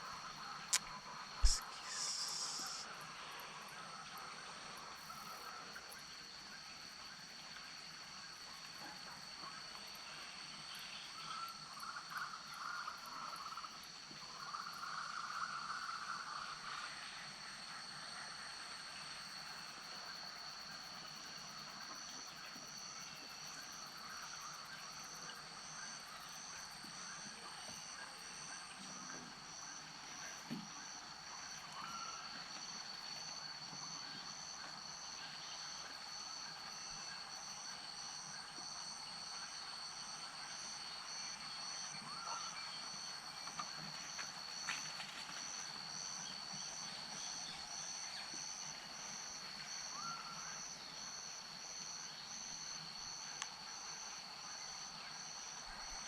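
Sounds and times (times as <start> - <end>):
pulsing high frog call: 0.0 - 3.7, 49.2 - 52.0
frogs trilling in chorus: 0.0 - 8.4, 10.6 - 56.0.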